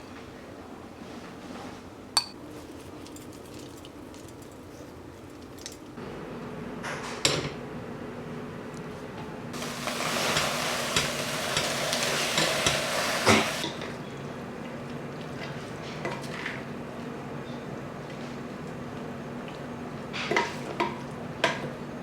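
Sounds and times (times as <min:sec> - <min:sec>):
food sizzling in a pan: 0:09.6 - 0:13.6.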